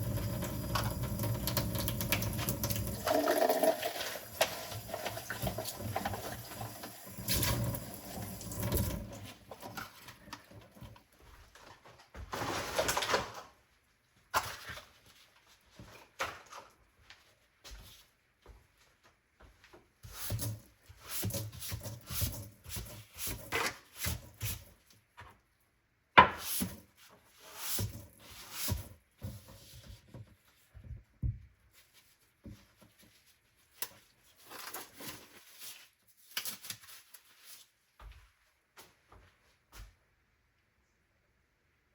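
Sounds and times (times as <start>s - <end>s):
water running or scrubbing: 0.0s - 10.6s.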